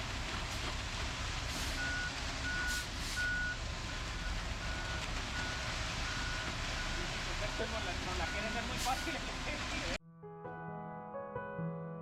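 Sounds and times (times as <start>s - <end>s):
truck backup alarm beeping: 1.7s - 9.2s.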